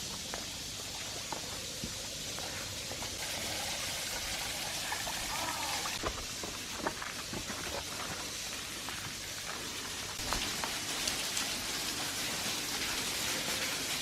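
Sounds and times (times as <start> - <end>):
waterfall splashing: 3.1 - 14.0.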